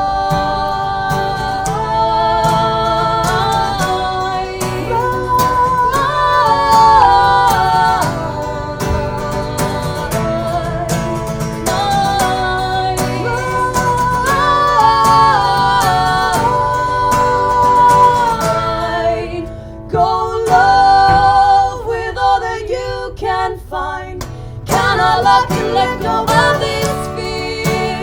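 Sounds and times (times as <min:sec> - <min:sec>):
acoustic guitars strumming: 0:00.0 - 0:28.0
women singing held wordless notes: 0:00.0 - 0:28.0.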